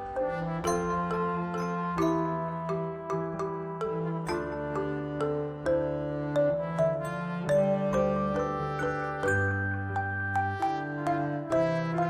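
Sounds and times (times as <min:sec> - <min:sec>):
plucked melodic notes: 0:00.0 - 0:12.0.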